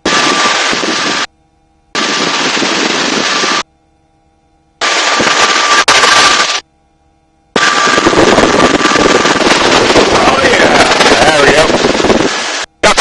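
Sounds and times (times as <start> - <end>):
helicopter rotor and wind noise: 0.0 - 3.7, 4.5 - 6.6, 7.5 - 13.0.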